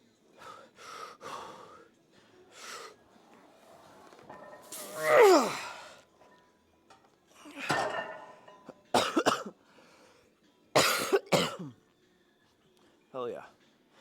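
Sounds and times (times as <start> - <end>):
falling groan: 4.8 - 5.8
person coughing hard: 8.9 - 9.6, 10.8 - 11.8.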